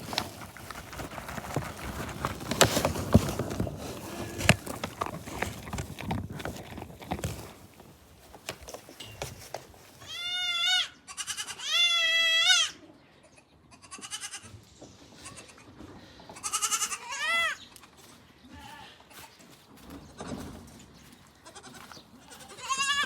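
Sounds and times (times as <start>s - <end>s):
young goat bleating: 10.0s - 14.5s, 16.4s - 17.6s, 21.4s - 23.0s.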